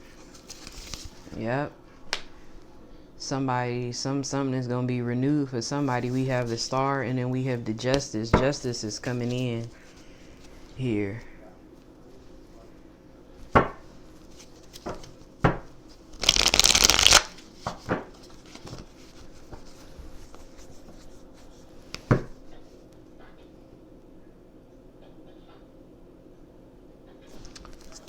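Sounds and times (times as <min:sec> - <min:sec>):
cards riffle shuffling: 0:00.2 - 0:01.4, 0:16.2 - 0:19.7.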